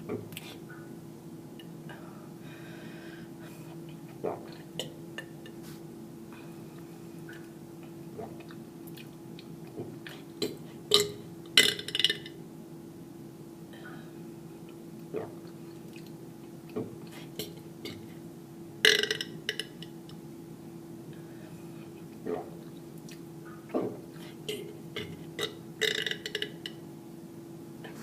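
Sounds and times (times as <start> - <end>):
steady low hum: 0.0 - 28.0
small mouth clicks: 7.3 - 11.1, 22.2 - 25.5.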